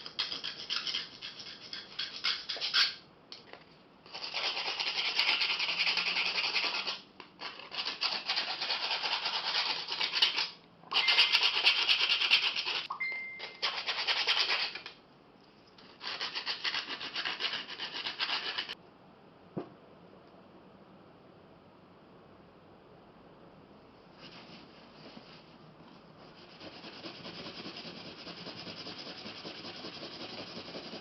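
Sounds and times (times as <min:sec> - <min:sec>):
hand sanding scratchy hiss: 0:26.2 - 0:31.0.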